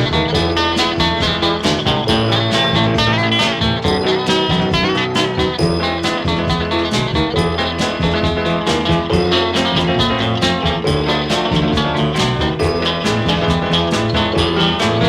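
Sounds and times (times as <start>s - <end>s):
folk-rock guitar and drums: 0.0s - 15.0s.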